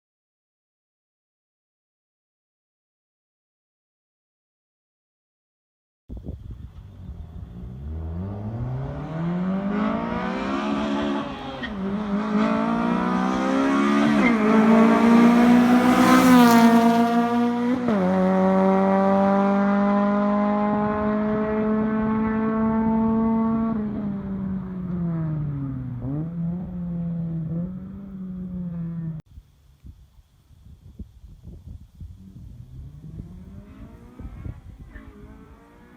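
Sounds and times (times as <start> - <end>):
car engine revving: 6.8 - 29.2, 32.3 - 35.9.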